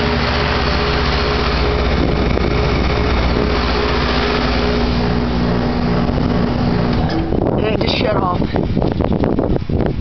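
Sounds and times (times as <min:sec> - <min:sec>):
heat pump humming with low drone: 0:00.0 - 0:10.0.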